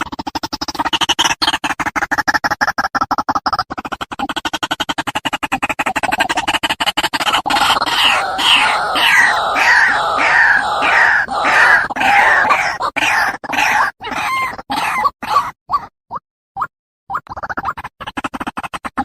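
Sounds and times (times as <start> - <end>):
waterhen calling: 7.5 - 15.5.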